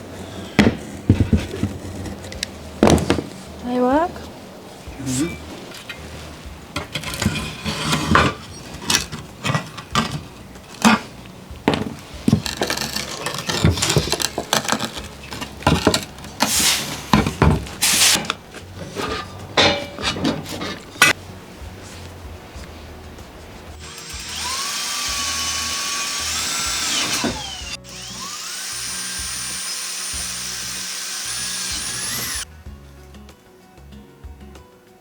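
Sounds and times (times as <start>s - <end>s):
tools and metal parts clinking: 6.8s - 11.1s, 11.7s - 21.2s
short bursts of hiss: 16.4s - 17.0s, 17.8s - 18.2s.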